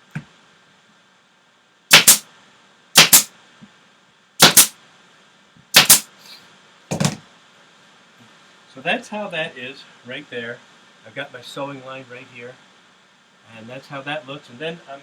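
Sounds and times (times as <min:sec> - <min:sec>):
pneumatic staple gun firing: 0:01.9 - 0:02.2, 0:03.0 - 0:03.3, 0:04.4 - 0:04.7, 0:05.8 - 0:06.1.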